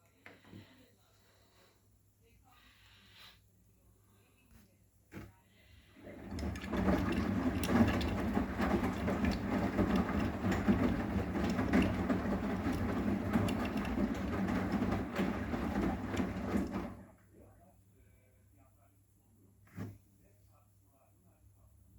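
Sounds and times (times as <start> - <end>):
washing machine motor hum: 5.7 - 17.5
drum rattling and clattering: 6.0 - 17.2.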